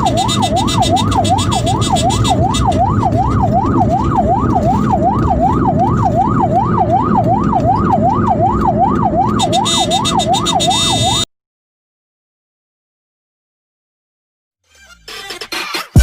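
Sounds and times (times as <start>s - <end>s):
ambulance siren wailing: 0.0s - 11.3s
road and engine rumble: 0.0s - 11.3s.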